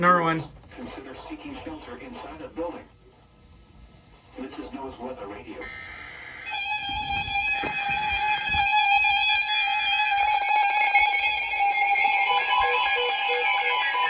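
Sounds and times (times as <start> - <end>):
harsh weather radio alarm tone: 4.4 - 14.0.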